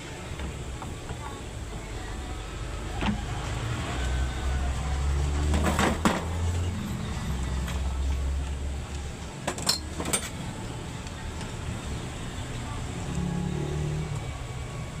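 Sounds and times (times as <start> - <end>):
diesel engine rumbling: 0.0 - 15.0.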